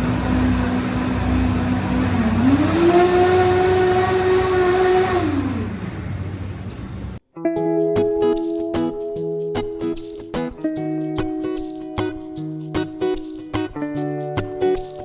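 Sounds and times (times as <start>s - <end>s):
rising and falling whine: 0.0s - 6.5s
vehicle engine and road rumble: 0.0s - 7.2s.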